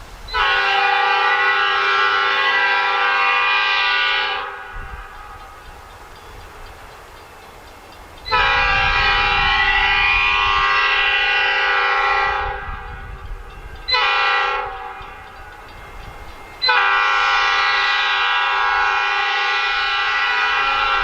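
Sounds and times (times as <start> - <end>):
low rumble of train: 0.0 - 21.0
locomotive air horn blasts: 0.3 - 5.5, 8.3 - 13.3, 13.9 - 15.3, 16.6 - 21.0.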